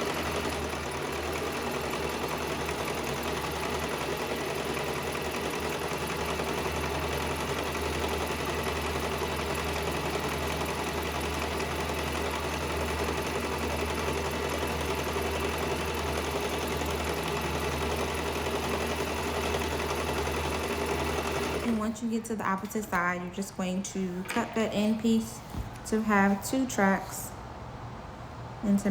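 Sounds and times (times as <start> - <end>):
electric sewing machine running: 0.0 - 23.1.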